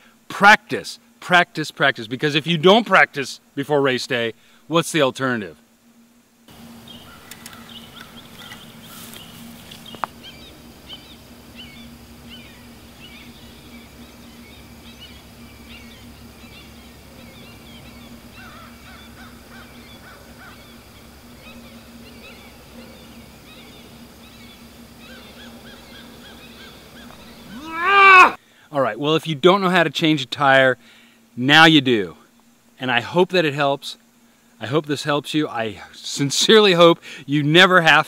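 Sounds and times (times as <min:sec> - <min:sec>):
steady low hum: 0:00.0 - 0:38.0
short bird calls: 0:06.9 - 0:28.4.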